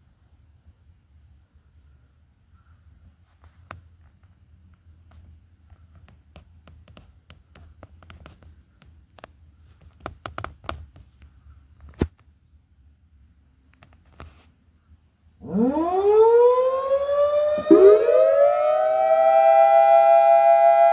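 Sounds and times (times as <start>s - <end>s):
light clicks and taps: 3.4s - 12.3s, 13.7s - 14.4s.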